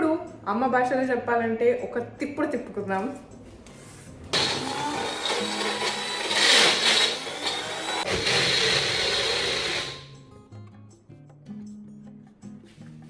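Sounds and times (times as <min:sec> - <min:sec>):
blender whining: 0:04.4 - 0:10.1.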